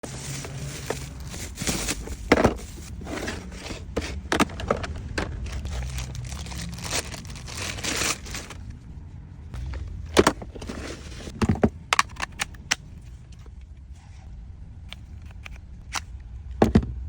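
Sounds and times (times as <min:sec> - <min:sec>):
rustling: 0:00.0 - 0:11.4.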